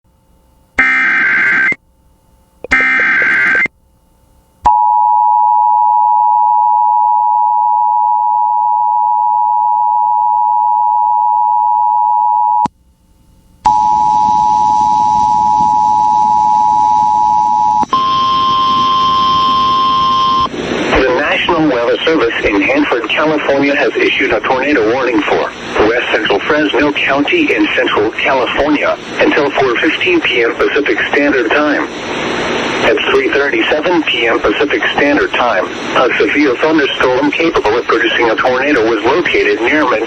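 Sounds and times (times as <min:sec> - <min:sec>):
two-tone attention signal: 0:00.8 - 0:01.8, 0:02.6 - 0:03.7, 0:13.7 - 0:20.5
screeching data bursts: 0:02.6 - 0:03.7
steady alert tone: 0:02.7 - 0:03.7.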